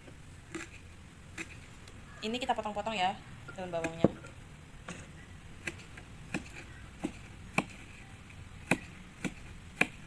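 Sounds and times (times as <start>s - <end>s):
knife chopping on cutting board: 5.6s - 8.0s, 8.6s - 10.0s.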